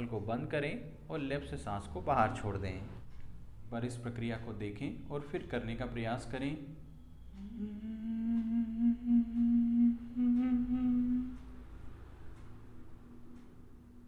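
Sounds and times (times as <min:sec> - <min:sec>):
person humming low note: 0:07.3 - 0:12.0.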